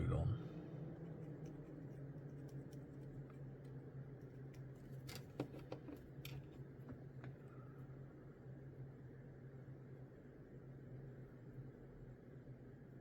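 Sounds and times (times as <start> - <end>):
steady low hum: 0.0 - 4.4.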